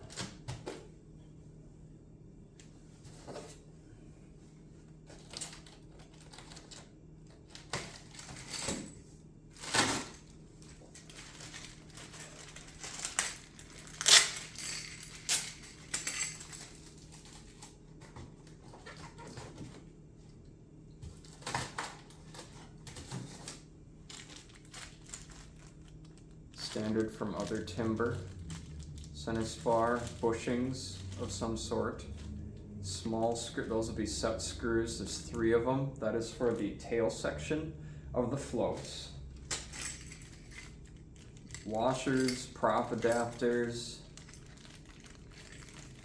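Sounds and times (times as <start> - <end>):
faint steady hum: 0.0 - 46.0
plastic bags rustling: 9.5 - 19.5, 21.2 - 35.5, 38.4 - 46.0.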